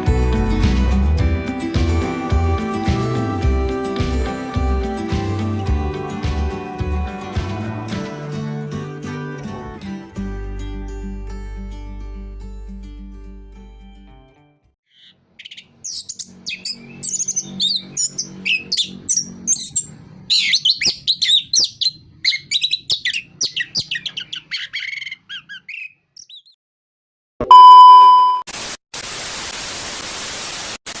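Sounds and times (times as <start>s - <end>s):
bird singing whistled notes and trills: 14.9s - 26.6s
loud steady beep: 27.4s - 28.5s
static hiss: 28.5s - 31.0s.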